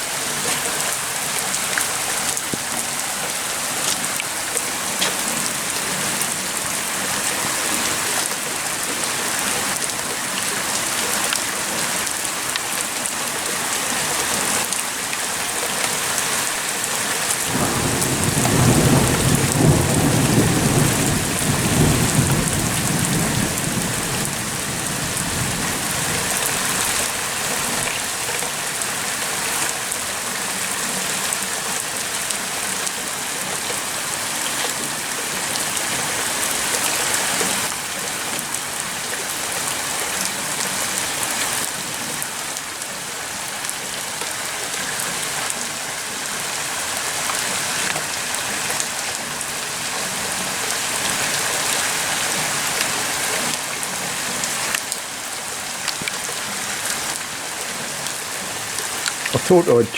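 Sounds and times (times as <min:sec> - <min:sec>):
rain pouring: 0:00.0 - 0:59.9.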